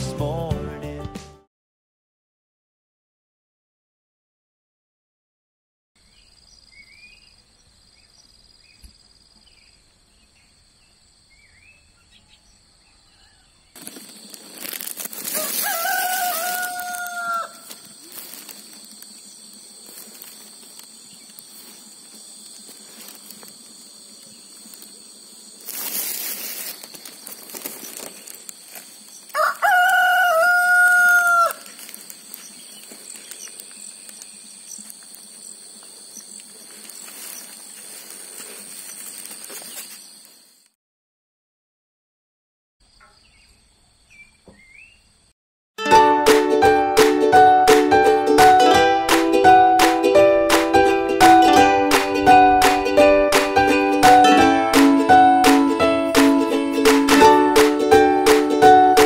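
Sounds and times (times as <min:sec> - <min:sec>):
insects buzzing: 0:06.0 - 0:40.8, 0:42.8 - 0:45.3
rooster crowing: 0:15.3 - 0:18.0, 0:29.3 - 0:31.8.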